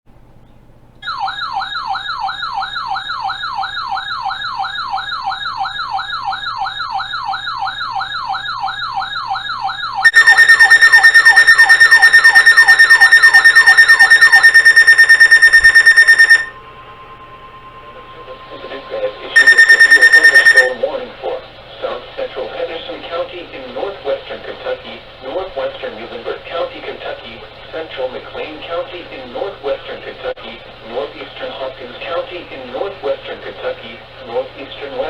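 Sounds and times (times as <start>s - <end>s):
electronic siren wailing: 1.0s - 20.8s
rapidly pulsing high tone: 10.0s - 20.8s.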